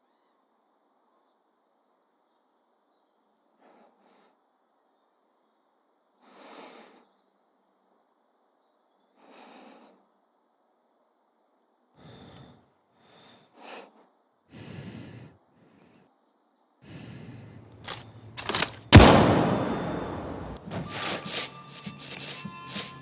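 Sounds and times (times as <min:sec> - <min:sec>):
insects: 0:00.0 - 0:19.1
heavy breathing: 0:03.6 - 0:04.4, 0:06.2 - 0:07.1, 0:09.2 - 0:10.1, 0:12.0 - 0:16.1, 0:16.8 - 0:23.0.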